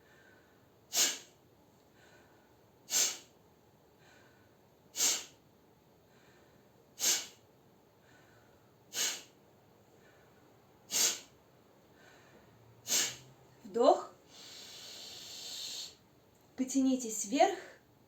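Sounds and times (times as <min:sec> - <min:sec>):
forceful nasal exhales: 0:00.9 - 0:01.4, 0:02.9 - 0:03.3, 0:05.0 - 0:05.4, 0:07.0 - 0:07.4, 0:08.9 - 0:09.4, 0:10.9 - 0:11.4, 0:12.8 - 0:13.3, 0:14.3 - 0:16.0
faint mouth inhales: 0:05.0 - 0:05.4, 0:07.0 - 0:07.4, 0:09.0 - 0:09.3, 0:10.9 - 0:11.3, 0:12.9 - 0:13.3, 0:14.3 - 0:16.0.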